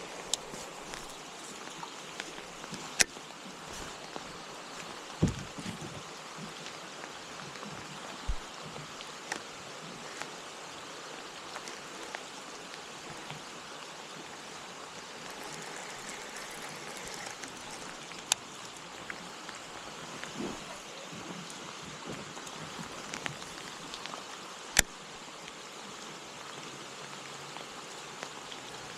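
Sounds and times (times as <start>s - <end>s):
light rain hissing on water: 0.0s - 28.9s
sharp rain ticks: 0.0s - 28.9s.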